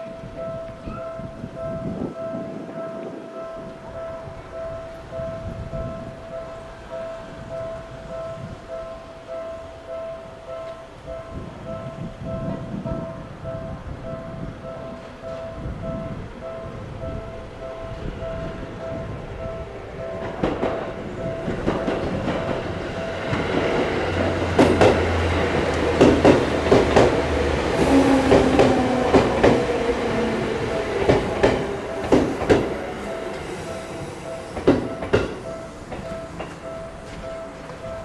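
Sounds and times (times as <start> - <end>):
train rumble: 0.0 - 38.0
train wheels clacking over rail joints: 20.0 - 37.9
level-crossing bell ringing: 28.6 - 38.0.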